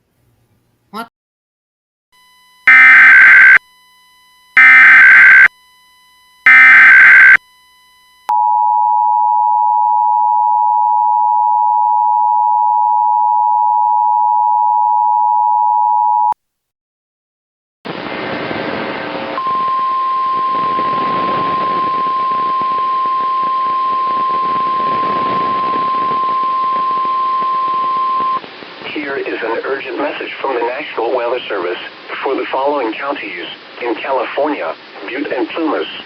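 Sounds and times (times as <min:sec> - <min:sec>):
two-tone attention signal: 0:02.2 - 0:03.9, 0:04.6 - 0:05.5, 0:06.5 - 0:07.4
buzzy digital alert bursts: 0:02.7 - 0:03.6, 0:06.5 - 0:07.4.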